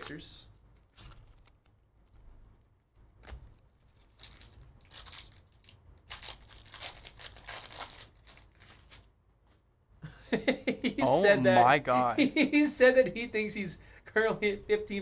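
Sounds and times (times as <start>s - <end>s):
plastic wrappers tearing and crinkling: 3.8s - 9.2s.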